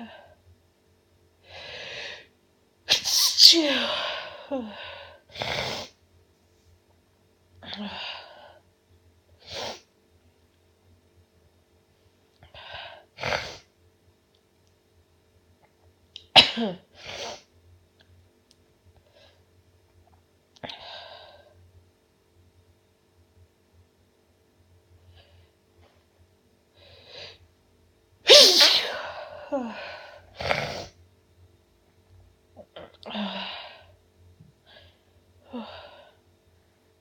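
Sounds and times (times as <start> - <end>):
person sneezing: 2.9 - 5.9, 16.3 - 17.4, 28.3 - 30.9.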